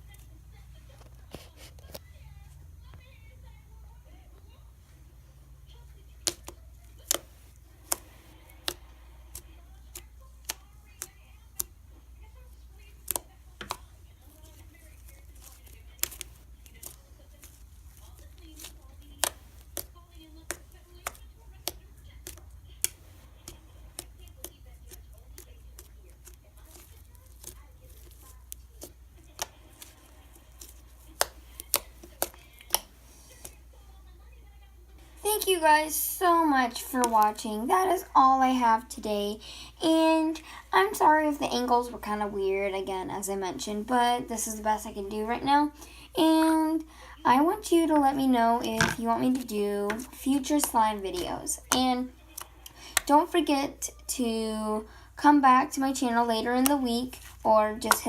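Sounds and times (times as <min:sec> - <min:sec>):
slime popping and clicking: 0:06.2 - 0:11.7, 0:13.0 - 0:13.9, 0:14.9 - 0:29.9, 0:30.6 - 0:33.6
slime popping when poked: 0:06.2 - 0:11.7, 0:30.6 - 0:33.6, 0:48.8 - 0:49.0.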